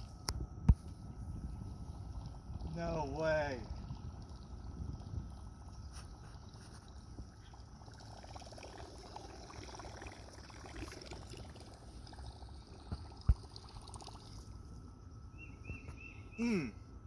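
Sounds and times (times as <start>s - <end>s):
water splashing and gurgling: 1.8s - 14.6s.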